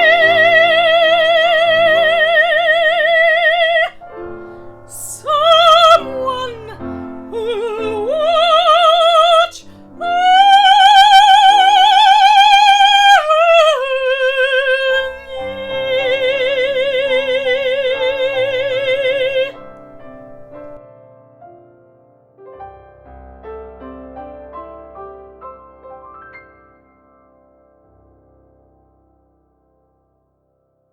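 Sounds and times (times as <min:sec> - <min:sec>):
woman singing operatically: 0:00.0 - 0:04.0, 0:04.8 - 0:20.8
piano playing: 0:00.0 - 0:30.6.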